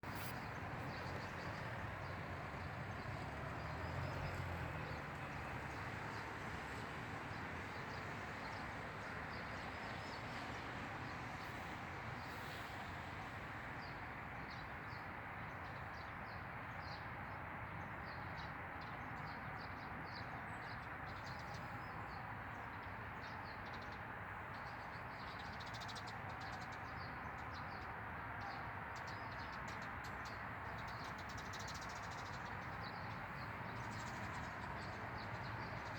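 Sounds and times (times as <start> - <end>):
small birds chirping: 20.1 - 35.9.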